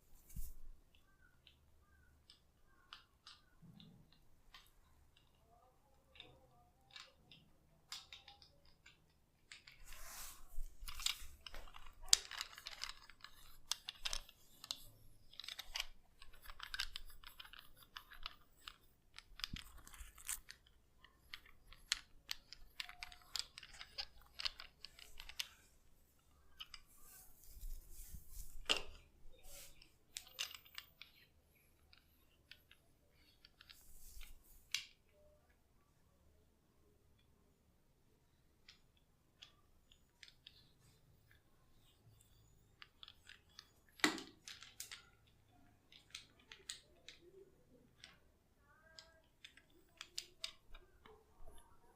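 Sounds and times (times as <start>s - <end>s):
fingers rubbing hair and scalp: 9.9s - 10.8s.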